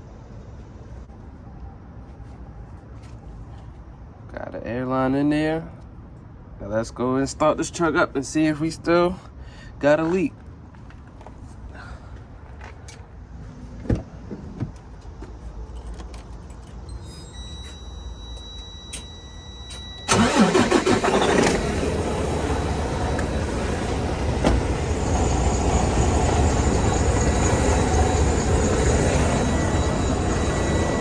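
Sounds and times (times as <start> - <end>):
electronic warning tone: 16.9 - 21.5, 22.1 - 31.0
diesel engine starting and idling: 18.4 - 31.0.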